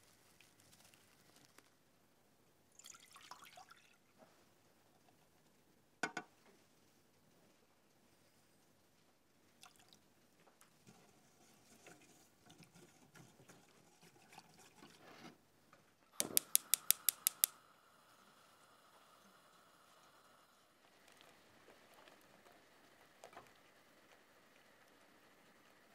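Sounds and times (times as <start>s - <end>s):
sharp clicks: 16.2s - 17.6s.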